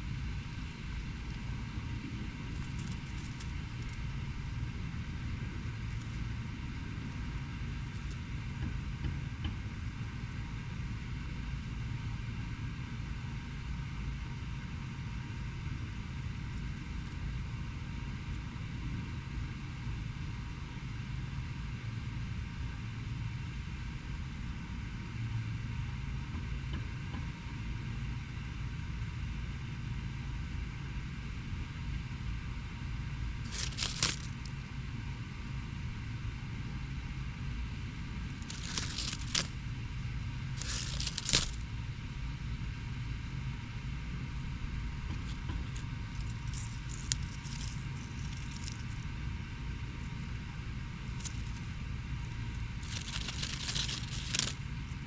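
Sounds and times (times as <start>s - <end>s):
dry crackling rustles: 0.3s - 8.7s, 33.4s - 34.8s, 38.0s - 42.0s, 44.4s - 49.2s, 50.9s - 55.0s.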